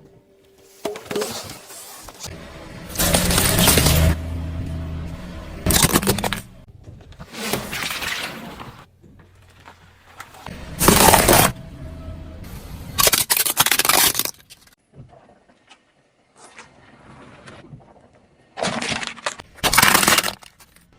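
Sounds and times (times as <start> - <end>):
car engine running: 2.2 - 7.2, 9.2 - 13.1
tyres crushing brittle objects: 13.0 - 14.8, 18.6 - 20.9.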